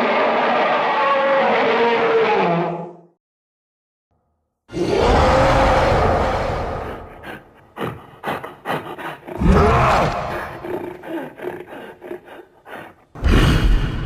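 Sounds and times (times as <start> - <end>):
cartoon monster roar: 4.7 - 14.0
cartoon monster grunts: 4.8 - 14.0.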